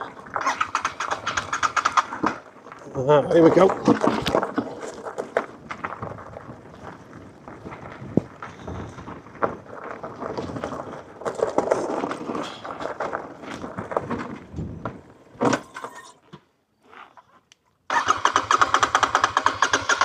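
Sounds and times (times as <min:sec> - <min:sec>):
motorcycle engine cranking: 0:00.0 - 0:02.5, 0:17.9 - 0:20.0
rough rattling noise: 0:00.0 - 0:16.3.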